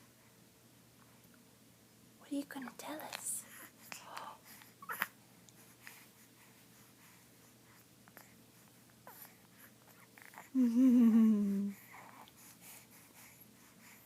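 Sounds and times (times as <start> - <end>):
baby cooing: 4.8 - 5.2.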